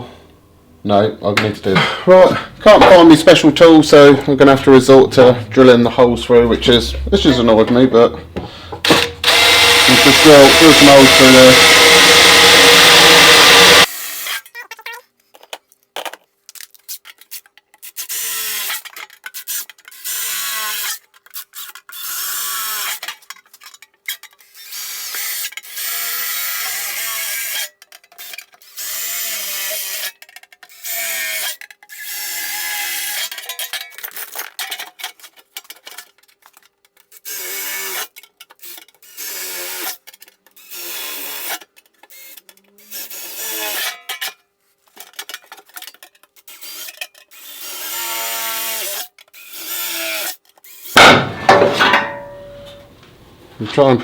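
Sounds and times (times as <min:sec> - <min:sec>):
power drill boring steel: 0:08.8 - 0:14.5, 0:40.6 - 0:43.9, 0:46.5 - 0:51.0.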